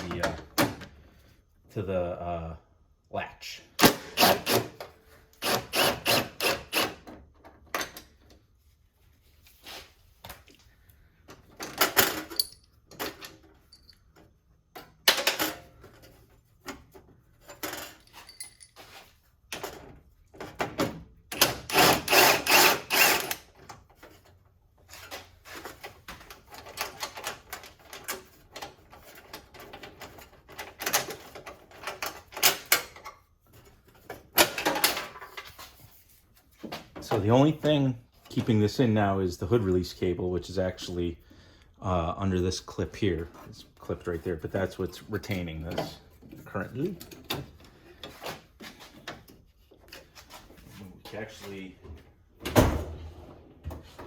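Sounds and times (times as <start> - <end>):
hand tool clicking and clattering: 11.9 - 15.6, 17.4 - 19.0.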